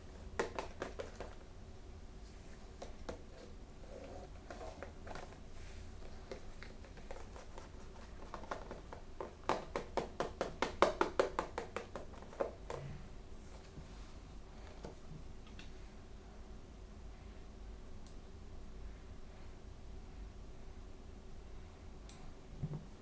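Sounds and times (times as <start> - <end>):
plastic packaging clicks and taps: 0.3 - 1.4, 2.8 - 3.2, 6.2 - 12.8.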